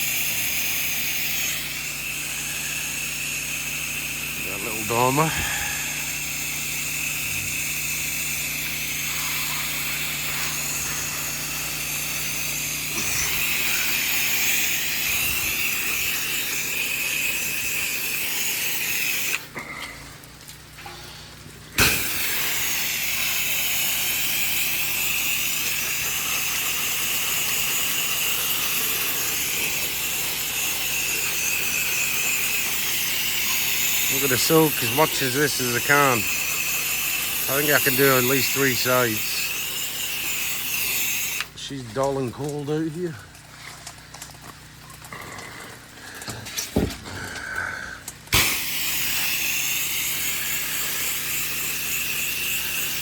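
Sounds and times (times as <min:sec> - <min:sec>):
spray hissing: 0:00.0 - 0:19.6, 0:20.9 - 0:41.6, 0:46.2 - 0:53.0
low pump hum: 0:00.0 - 0:37.6, 0:38.4 - 0:53.0.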